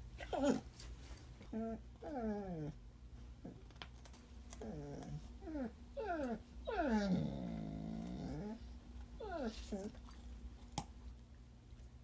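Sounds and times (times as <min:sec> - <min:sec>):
puppy whining cries: 0:01.5 - 0:02.8, 0:04.6 - 0:09.9.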